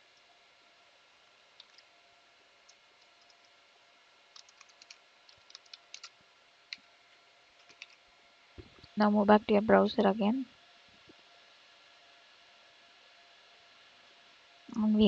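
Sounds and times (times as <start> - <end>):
keyboard typing: 1.6 - 1.9, 2.7 - 3.6, 4.3 - 6.2, 7.6 - 8.0.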